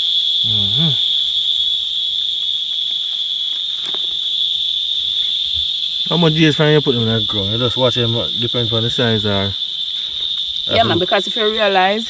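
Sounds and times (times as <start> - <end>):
insects chorus: 0.0 - 12.0
short voice sound: 0.5 - 1.0.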